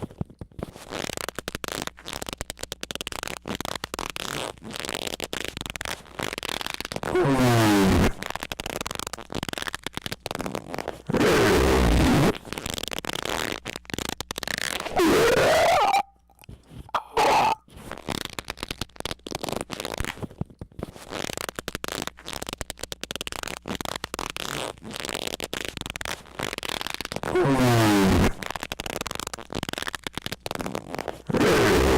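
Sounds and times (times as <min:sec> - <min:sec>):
choppy crackling noise: 0:00.0 - 0:31.9
distorted gliding squeals: 0:14.8 - 0:16.2, 0:17.0 - 0:17.6.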